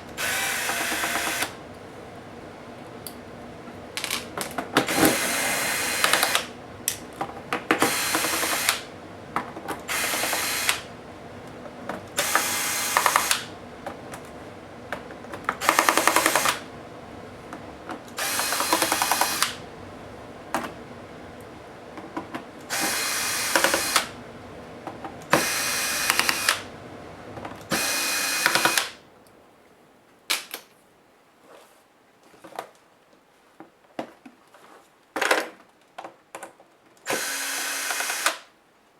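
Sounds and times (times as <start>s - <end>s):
electric screwdriver whirring: 0.2s - 1.6s, 4.9s - 6.5s, 7.8s - 8.9s, 9.9s - 10.9s, 12.2s - 13.5s, 15.6s - 16.6s, 18.2s - 19.6s, 22.7s - 24.2s, 25.3s - 26.6s, 27.7s - 29.0s, 37.1s - 38.5s.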